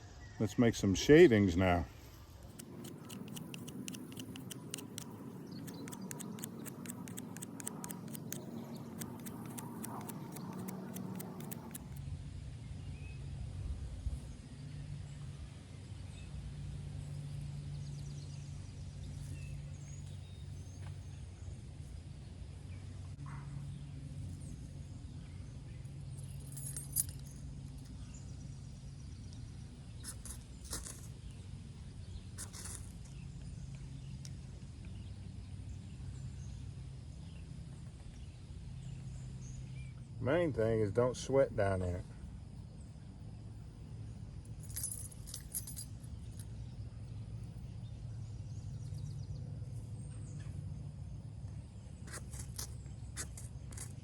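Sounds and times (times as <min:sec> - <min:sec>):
knife shaving wood: 0:02.4 - 0:12.0
small ticks: 0:02.5 - 0:12.0.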